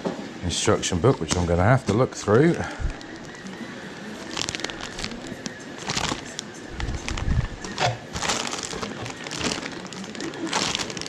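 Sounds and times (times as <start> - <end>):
plastic packaging crinkling: 0.5 - 11.0.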